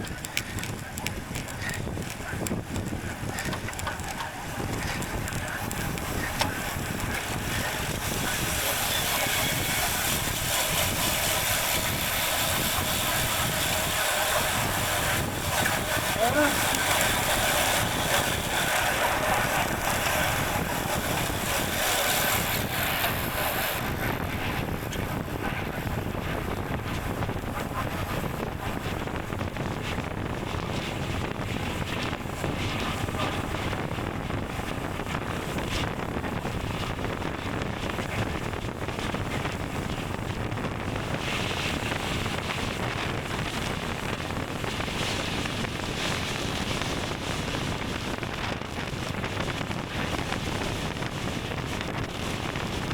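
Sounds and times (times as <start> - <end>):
wind rushing over microphone: 0.0 - 52.9.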